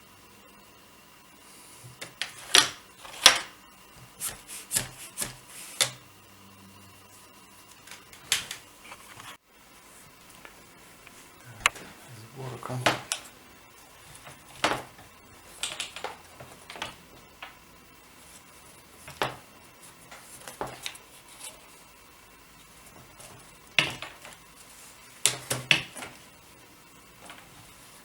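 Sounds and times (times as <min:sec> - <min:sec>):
wooden loom parts clacking: 0:14.2 - 0:17.6, 0:23.0 - 0:24.4.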